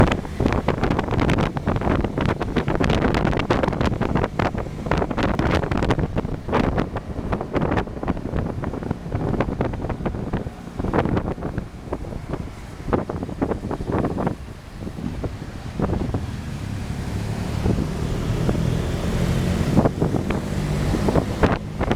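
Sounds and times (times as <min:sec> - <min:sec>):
wind buffeting microphone: 0:00.0 - 0:21.9.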